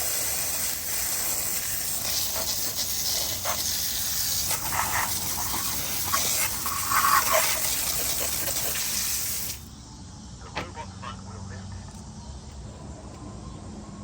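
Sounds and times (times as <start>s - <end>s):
hose water spray hissing: 0.0s - 9.7s.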